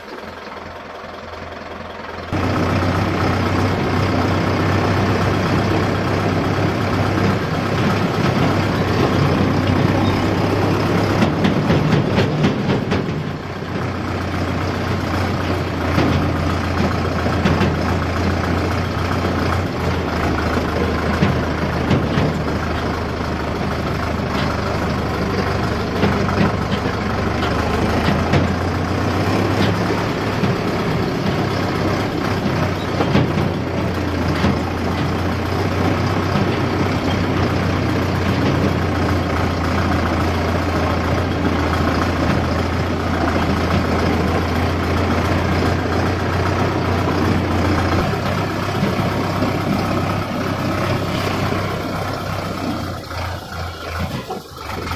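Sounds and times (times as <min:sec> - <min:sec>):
low engine hum: 0:00.0 - 0:54.9
machinery knocks: 0:02.4 - 0:19.4, 0:25.9 - 0:52.0.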